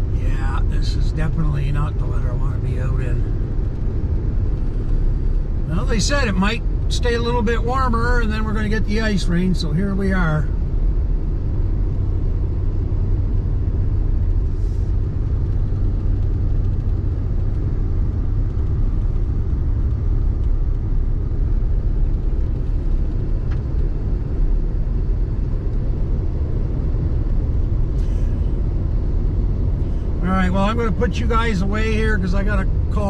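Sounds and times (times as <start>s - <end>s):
road noise: 0.0s - 33.0s
truck engine rumble: 0.0s - 33.0s.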